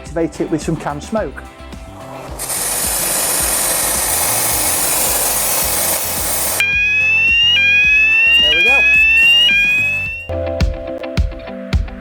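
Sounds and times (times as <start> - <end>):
aerosol spray hissing: 2.4 - 6.6
smoke alarm tone rising: 2.4 - 10.3.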